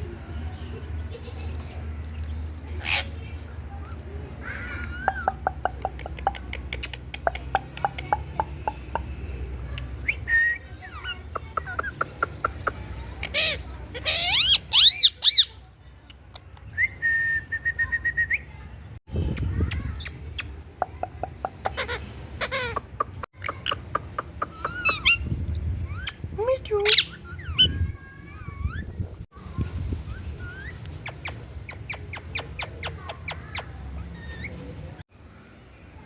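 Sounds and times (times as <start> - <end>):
parrot clicking: 5.1 - 9.1
parrot screeching: 13.3 - 15.5.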